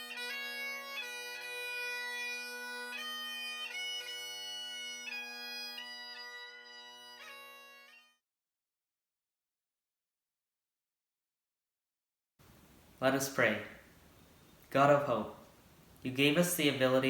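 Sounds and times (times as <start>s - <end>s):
bagpipes playing slow melody: 0.0s - 8.2s.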